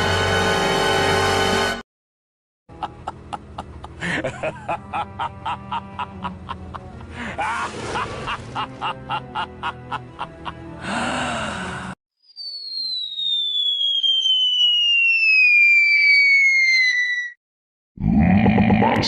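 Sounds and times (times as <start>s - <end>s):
villain cackling: 2.7s - 10.7s.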